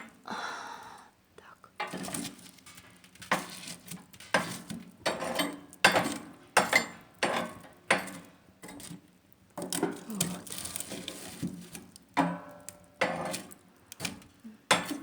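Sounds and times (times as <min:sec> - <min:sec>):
metal stove clanks: 0:04.2 - 0:08.9, 0:12.2 - 0:13.5.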